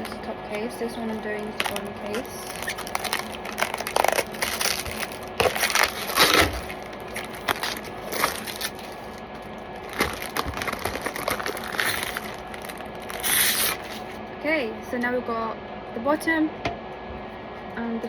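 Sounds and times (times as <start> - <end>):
plastic case and wrapping crackling: 0.0 - 14.2.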